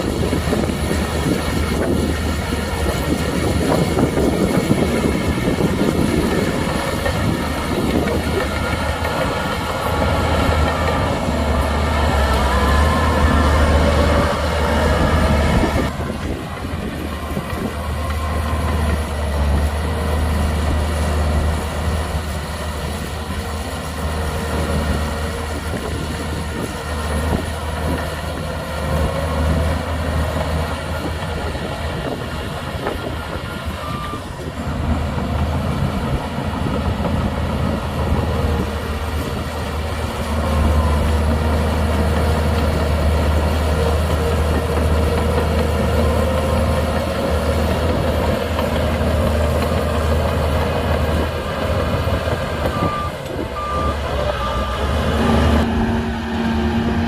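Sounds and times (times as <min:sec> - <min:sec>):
bulldozer diesel engine humming: 0:00.0 - 0:57.0.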